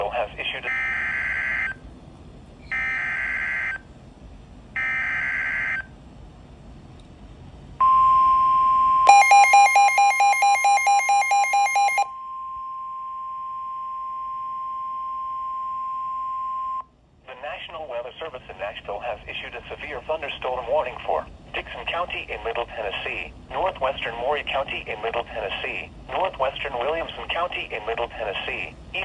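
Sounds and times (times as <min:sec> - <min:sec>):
rapid alarm beeping: 0:02.7 - 0:03.8, 0:04.8 - 0:05.9, 0:07.8 - 0:12.4
steady warning alert tone: 0:07.8 - 0:12.2.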